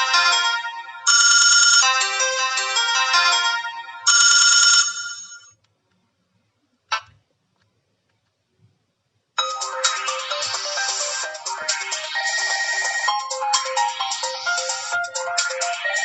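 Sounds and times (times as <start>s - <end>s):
electronic phone ringtone melody: 0.0s - 5.5s, 9.4s - 16.0s.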